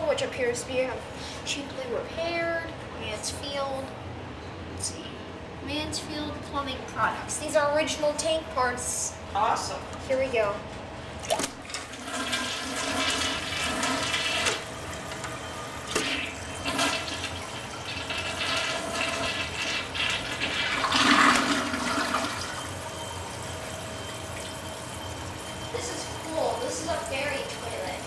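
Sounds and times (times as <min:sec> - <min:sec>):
toilet flushing: 0:11.2 - 0:28.0.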